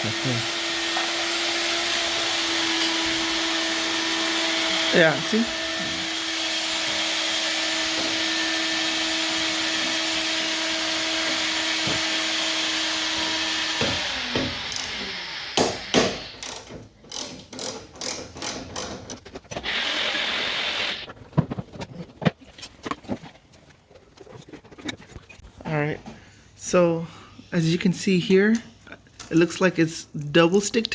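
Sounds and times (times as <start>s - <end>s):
small electric motor whirring: 0.0s - 18.9s.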